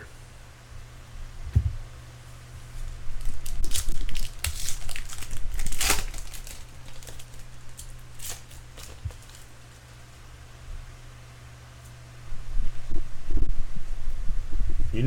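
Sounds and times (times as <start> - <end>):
low hum: 0.0 - 15.0
wrapper tearing and crinkling: 2.9 - 10.0.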